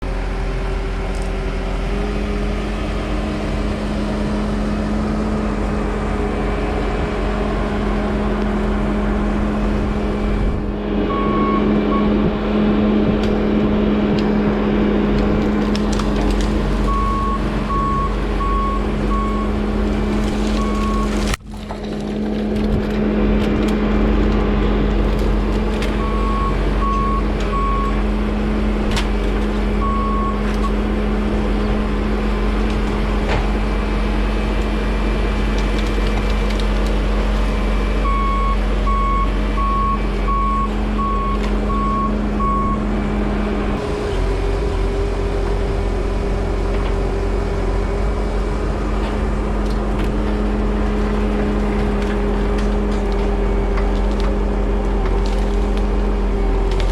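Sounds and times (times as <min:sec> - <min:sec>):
engine running under work: 0:00.0 - 0:56.9
backup alarm beeping: 0:38.0 - 0:42.9.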